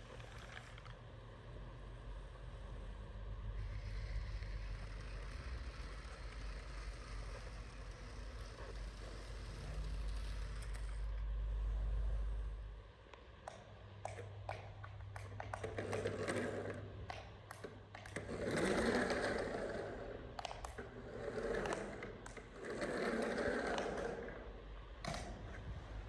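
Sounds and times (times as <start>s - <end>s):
toy electric motor whirring: 0.0s - 1.0s, 3.6s - 11.2s, 14.5s - 24.4s.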